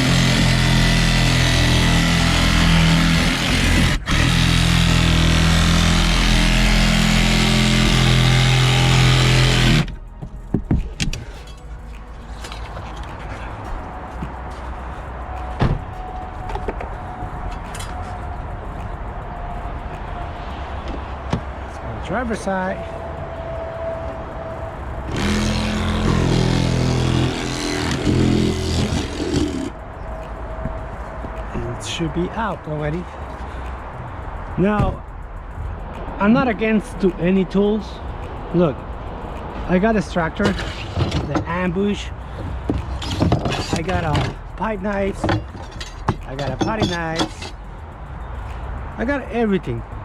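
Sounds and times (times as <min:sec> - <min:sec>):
power cutting tool running: 0:00.0 - 0:09.9, 0:25.1 - 0:29.7.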